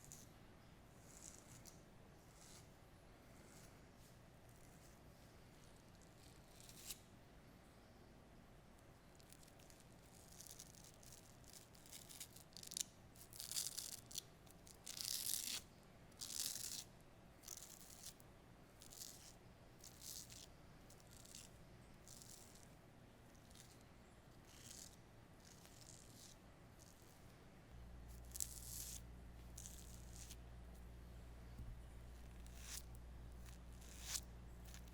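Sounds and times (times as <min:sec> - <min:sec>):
razor scraping across skin: 0:01.0 - 0:07.0, 0:18.8 - 0:27.3, 0:28.1 - 0:29.0, 0:29.6 - 0:30.4, 0:32.2 - 0:34.9.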